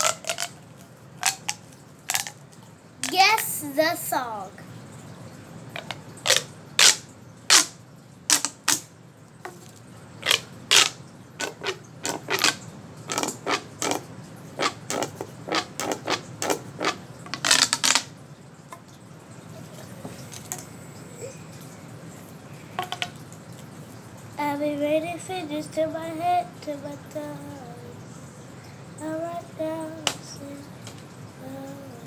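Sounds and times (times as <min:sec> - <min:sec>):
fidget toy clicking: 0:00.0 - 0:00.6, 0:01.2 - 0:02.4, 0:10.2 - 0:14.0.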